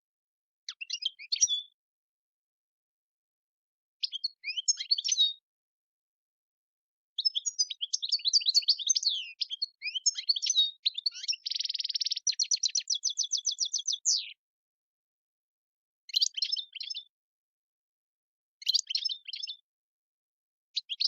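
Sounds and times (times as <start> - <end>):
finch twittering song: 0.7 - 1.8, 4.0 - 5.4, 7.2 - 14.4, 16.1 - 17.1, 18.6 - 19.6, 20.8 - 21.0.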